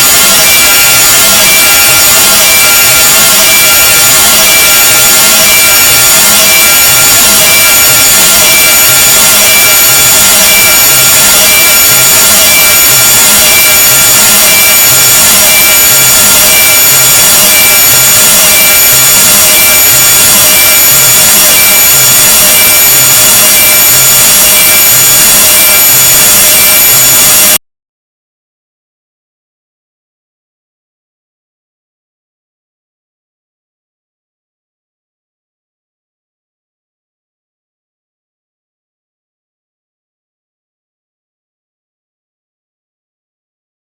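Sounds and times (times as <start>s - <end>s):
harsh grating hiss with high tones: 0.0s - 27.6s.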